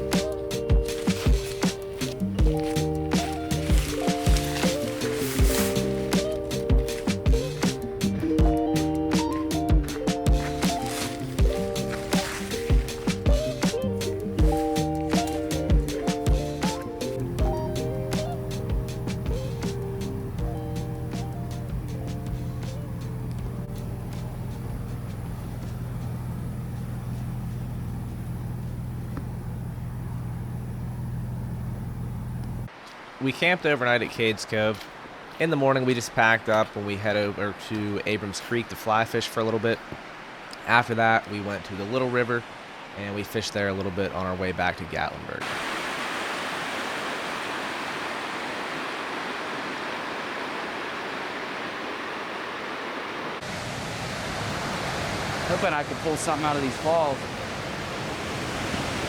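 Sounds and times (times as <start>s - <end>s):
rushing water of falls: 0.0s - 22.4s, 32.7s - 59.0s
vehicle engine drone: 0.0s - 32.7s
road noise: 0.0s - 33.2s, 45.3s - 59.0s.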